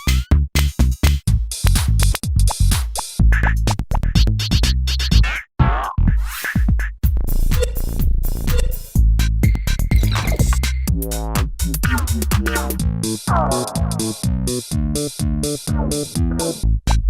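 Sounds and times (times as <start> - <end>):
electronic music with drum-machine beats: 0.0 - 17.0
stuttering sampled sounds: 9.9 - 14.3.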